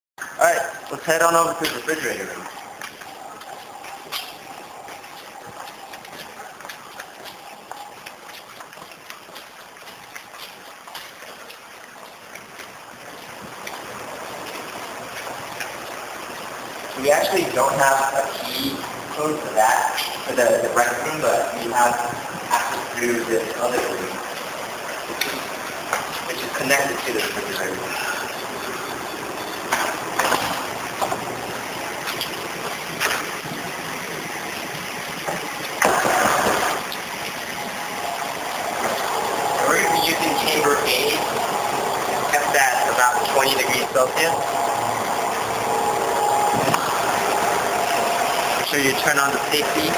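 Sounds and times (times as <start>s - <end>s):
steady rushing hiss: 0.2s - 49.9s
footsteps walking: 0.9s - 16.6s, 24.2s - 40.4s.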